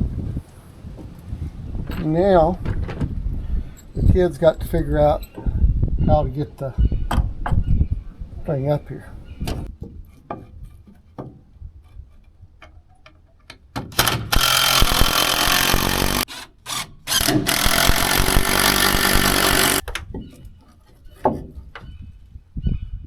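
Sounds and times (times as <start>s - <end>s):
knocks and handling clunks: 0.9s - 5.6s, 6.2s - 14.4s, 19.5s - 22.2s
power drill drilling into wood: 14.0s - 19.8s.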